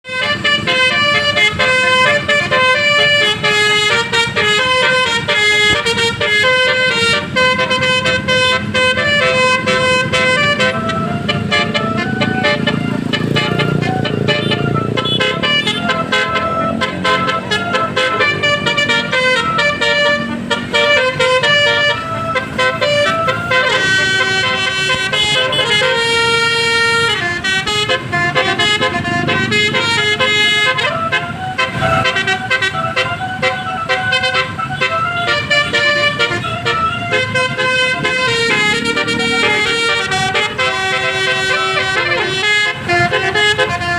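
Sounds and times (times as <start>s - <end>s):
musical bus horn melody: 0.0s - 43.9s.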